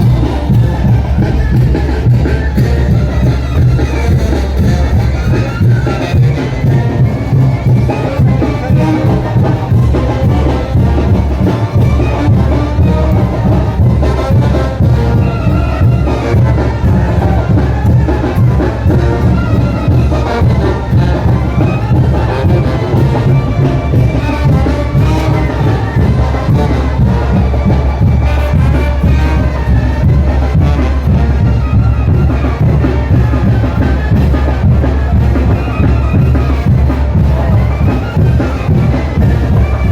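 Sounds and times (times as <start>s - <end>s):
brass band with drum beat: 0.0s - 39.9s.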